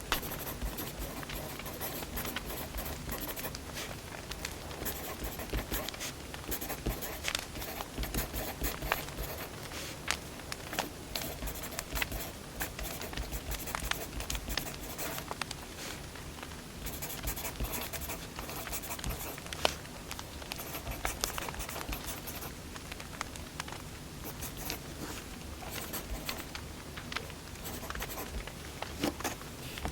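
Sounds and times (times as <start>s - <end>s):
wood fire crackling: 3.5s - 4.8s, 5.9s - 6.5s, 7.2s - 7.5s, 9.4s - 11.0s, 15.2s - 16.8s, 19.3s - 20.6s, 22.6s - 24.0s, 26.3s - 27.6s.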